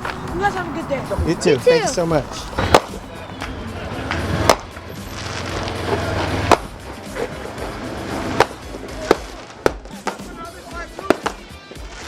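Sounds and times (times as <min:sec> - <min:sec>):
music: 0:00.0 - 0:12.0
firecrackers popping: 0:02.4 - 0:12.0.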